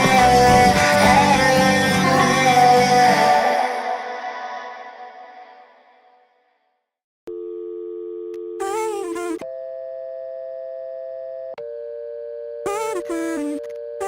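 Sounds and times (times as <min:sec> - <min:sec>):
song: 0:00.0 - 0:04.0
busy signal tone: 0:02.1 - 0:02.8
telephone dial tone: 0:07.3 - 0:14.0.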